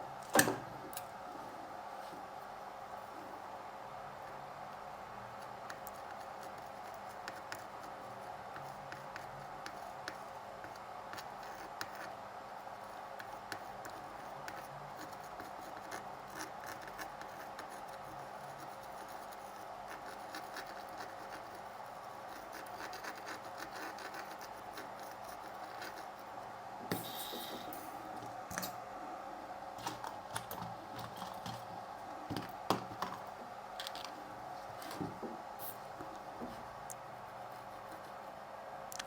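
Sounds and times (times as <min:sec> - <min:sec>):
fan hum: 0:00.0 - 0:39.0
soldering tool scratching: 0:13.4 - 0:26.3.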